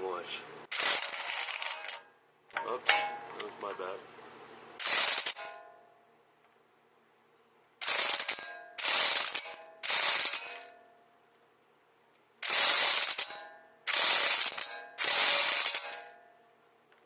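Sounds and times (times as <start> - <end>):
electric impact wrench hammering: 0.7 - 2.0, 4.8 - 5.7, 7.8 - 10.7, 12.4 - 16.2.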